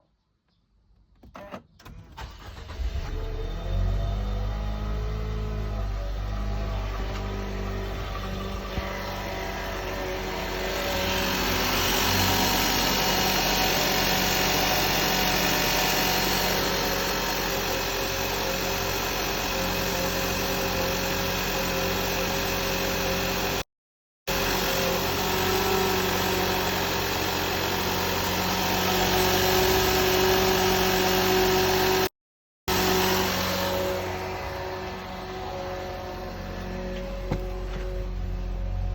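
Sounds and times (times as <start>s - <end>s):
car engine running: 2.2s - 23.6s, 32.7s - 38.9s
alternator whine: 4.1s - 15.1s.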